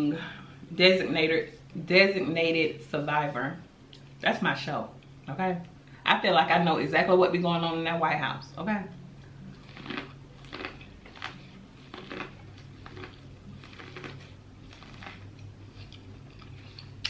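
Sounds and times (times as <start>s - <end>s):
steady low hum: 0.0s - 17.0s
chewing and mouth smacks: 9.5s - 17.0s.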